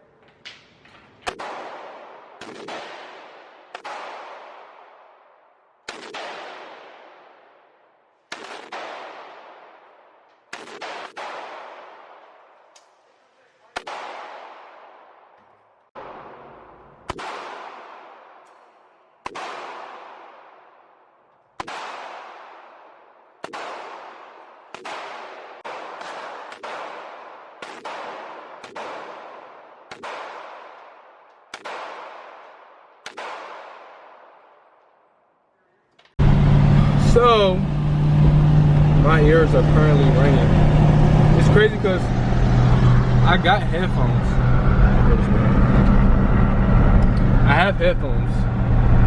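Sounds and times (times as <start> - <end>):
gunshots with echoing tail: 0.0 - 13.0, 13.6 - 35.2.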